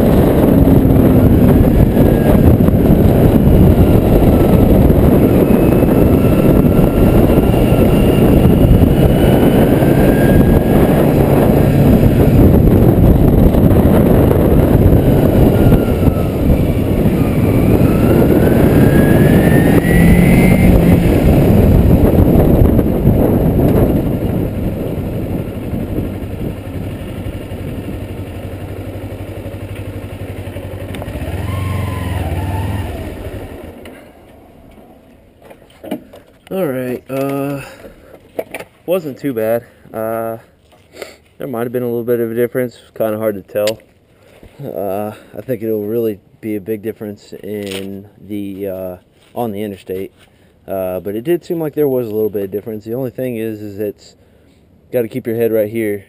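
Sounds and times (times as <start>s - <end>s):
wind rush over microphone: 0.0s - 29.6s
motorcycle engine drone: 0.0s - 38.5s.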